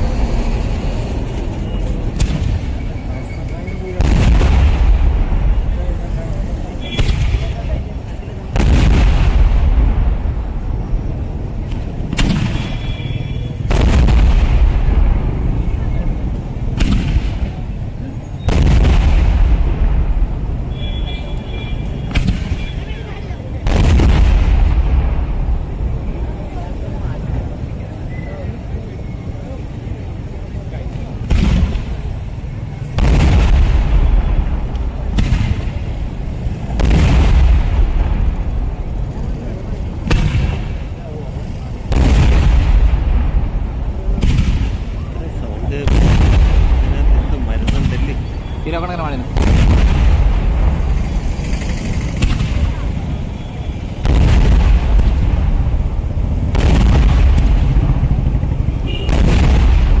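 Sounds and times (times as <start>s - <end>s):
heavy firework blasts rumbling: 0.0s - 28.0s, 29.3s - 60.0s
long rolling rumble: 54.0s - 60.0s.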